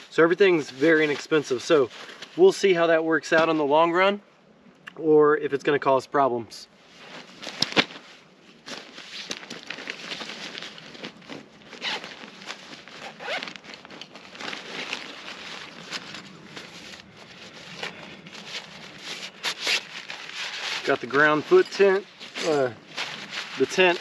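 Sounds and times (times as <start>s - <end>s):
nylon fabric rustling: 6.8s - 24.0s
zipper pulled: 9.0s - 20.9s.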